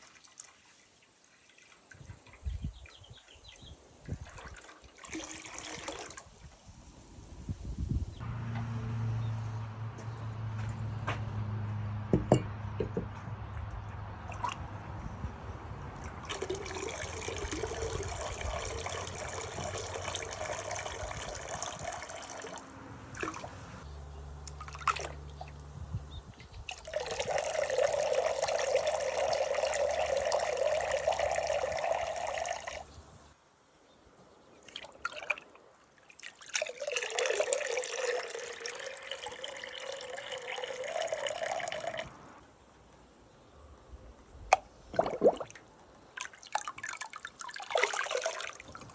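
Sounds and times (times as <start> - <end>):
pottery knocking: 12.1 - 13.2
tap water running: 16.2 - 23.6, 26.7 - 32.8, 36.5 - 42.2.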